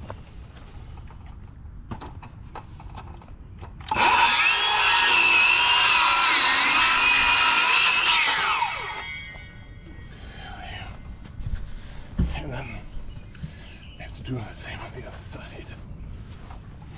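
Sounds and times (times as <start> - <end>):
power tool cutting wood: 3.9 - 9.5.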